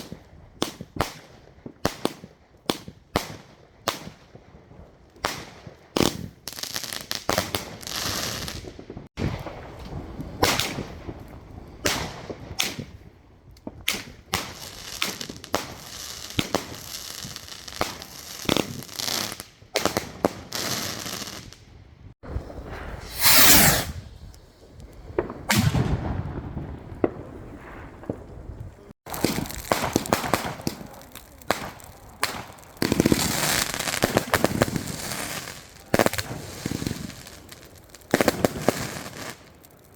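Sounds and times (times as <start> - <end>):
fireworks crackling: 5.3 - 21.6, 22.3 - 39.9
fireworks bangs: 22.3 - 24.3, 25.0 - 39.9.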